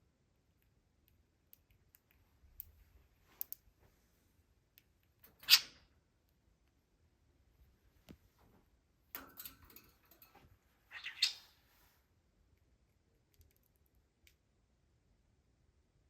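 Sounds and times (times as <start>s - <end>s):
budgerigar chirping: 10.9s - 11.5s.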